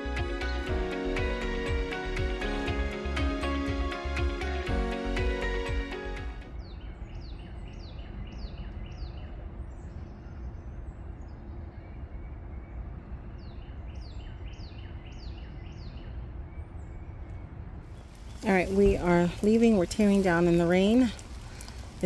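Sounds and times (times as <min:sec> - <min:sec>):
background hiss: 0:00.0 - 0:06.6, 0:17.9 - 0:22.0
songbird singing: 0:00.0 - 0:22.0.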